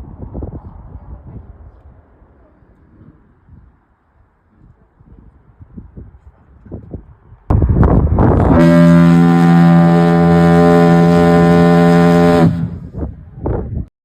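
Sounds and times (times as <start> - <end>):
wind buffeting microphone: 0.0 - 11.4, 12.2 - 13.9
deep foghorn blast: 7.5 - 13.2
rush of noise: 7.5 - 13.5.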